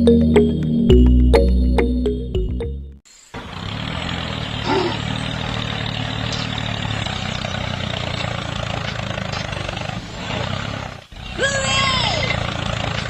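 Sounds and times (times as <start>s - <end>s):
engine running with rattle: 3.3s - 13.0s.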